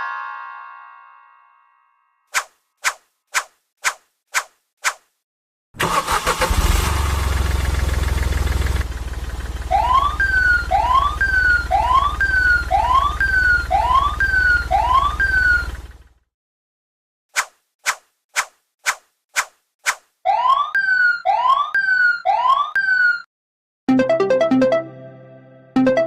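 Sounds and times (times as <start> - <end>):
motor rumbling: 6.9 - 16.2
siren-like whoop: 9.7 - 15.7.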